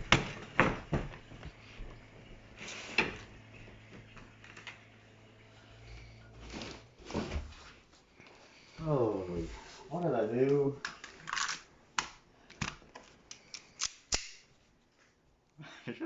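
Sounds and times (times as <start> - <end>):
low hum: 0.0 - 9.9.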